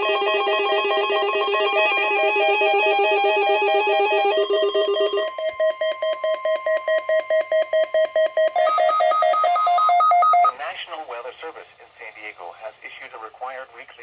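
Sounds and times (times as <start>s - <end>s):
two-pitch alert trill: 0.0s - 10.5s
rapid pulsing beep: 4.0s - 10.6s
steady high tone: 8.6s - 10.6s.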